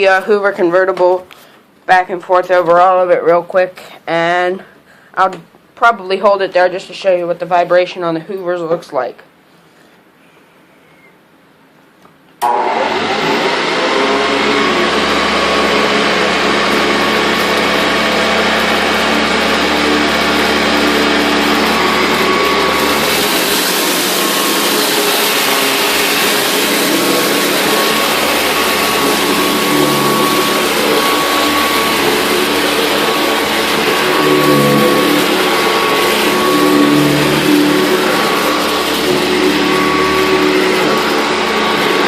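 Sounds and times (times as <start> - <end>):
vacuum cleaner running: 12.4 - 42.0.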